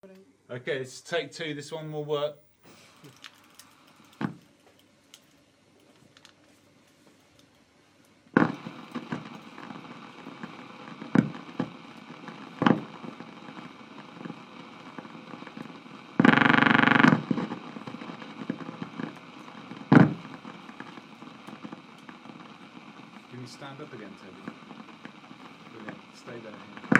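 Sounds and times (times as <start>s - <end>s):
film soundtrack hiss and crackle: 0.0s - 26.9s
loud pops: 4.0s - 4.6s, 8.3s - 26.9s
loud buzz: 16.2s - 17.4s.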